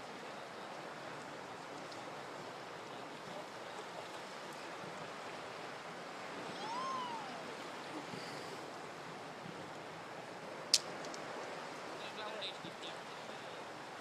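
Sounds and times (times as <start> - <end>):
ocean surf: 0.0 - 14.0
whistle-like tone: 6.5 - 7.4.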